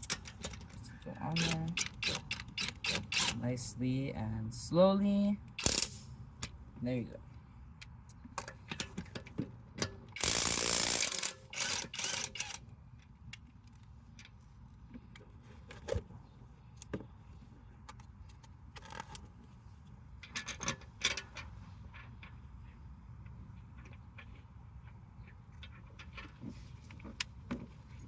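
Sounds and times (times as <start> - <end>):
metal clinks of bolts and socket: 0.0 - 3.4, 20.2 - 22.4.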